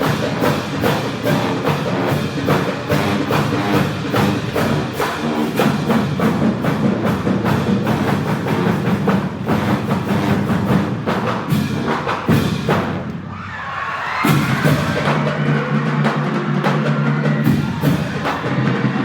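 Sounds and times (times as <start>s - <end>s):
dance music with drum beat: 14.2s - 19.0s.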